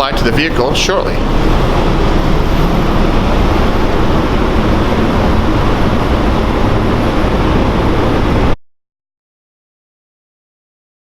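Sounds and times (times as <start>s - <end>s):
loud low rumbling noise: 0.0s - 8.6s.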